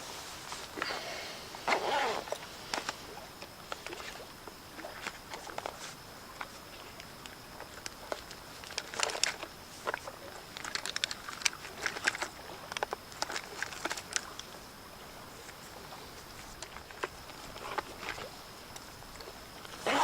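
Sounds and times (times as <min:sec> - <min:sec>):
camping gear rustling and clicking: 0:00.0 - 0:20.0.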